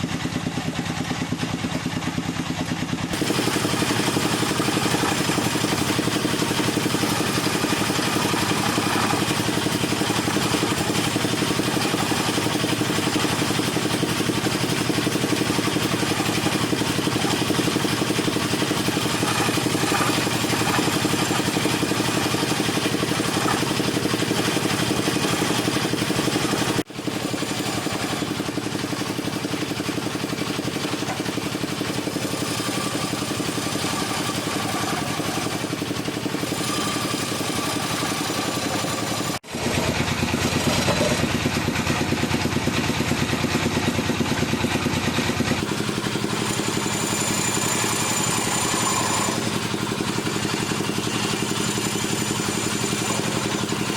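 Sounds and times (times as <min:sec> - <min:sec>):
wood lathe motor running: 0:03.1 - 0:53.9.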